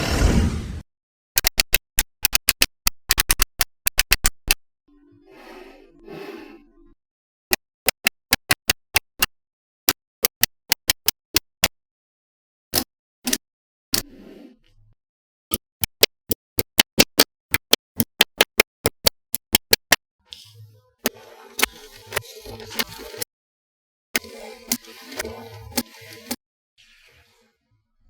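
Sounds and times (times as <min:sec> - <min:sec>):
magnetic balls clicking together: 0:01.4 - 0:04.6, 0:07.5 - 0:09.3, 0:09.9 - 0:11.7, 0:15.5 - 0:20.0.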